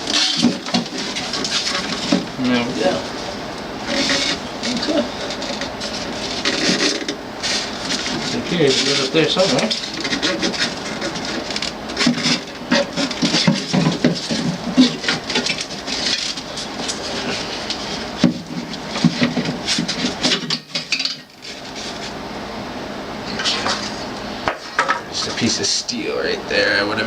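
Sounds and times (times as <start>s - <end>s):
metal parts clattering: 0.0s - 2.1s.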